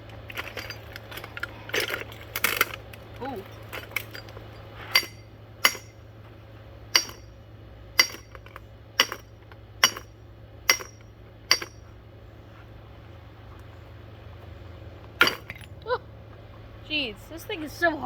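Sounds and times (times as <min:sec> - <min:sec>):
blows striking glass light housing: 0:03.4 - 0:06.0, 0:06.9 - 0:07.3, 0:08.0 - 0:11.8, 0:15.2 - 0:15.8.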